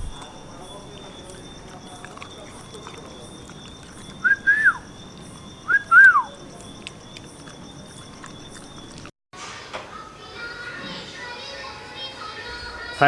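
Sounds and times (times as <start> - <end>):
short clear whistles: 0.0 - 9.1.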